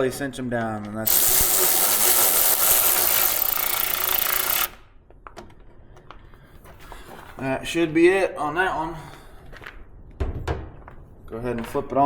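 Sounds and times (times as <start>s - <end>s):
cordless power driver running: 1.1s - 4.8s.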